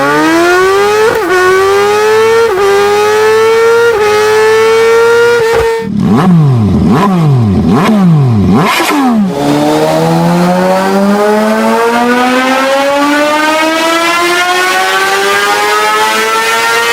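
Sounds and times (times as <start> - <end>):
motorcycle engine downshifting and accelerating: 0.0 - 16.9.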